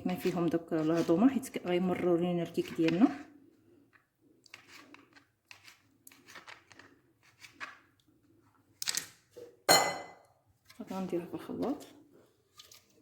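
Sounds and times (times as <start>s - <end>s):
knife scrape: 4.5s - 6.6s.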